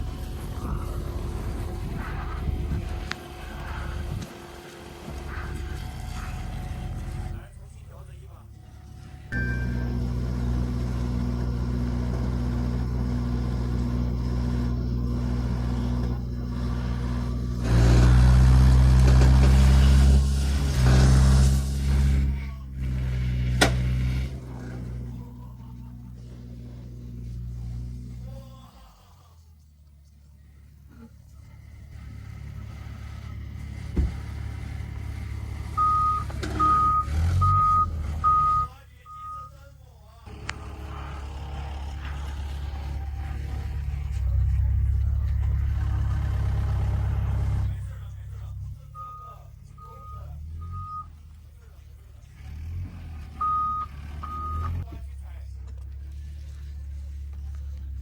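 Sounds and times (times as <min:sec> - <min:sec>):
excavator diesel engine running: 0:00.0 - 0:58.0
reversing alarm beeping: 0:08.8 - 0:11.0, 0:35.6 - 0:39.7, 0:48.3 - 0:51.3, 0:52.6 - 0:54.9.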